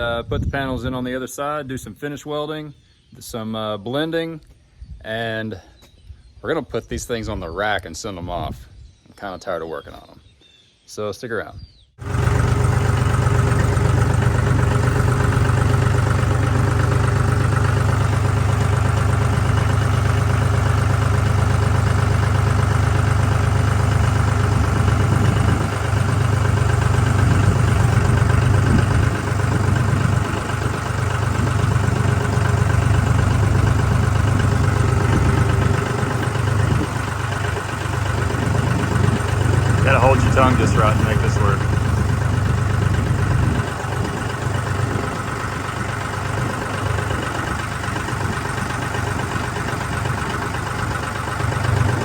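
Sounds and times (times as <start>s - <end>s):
engine running steadily: 12.0s - 52.0s.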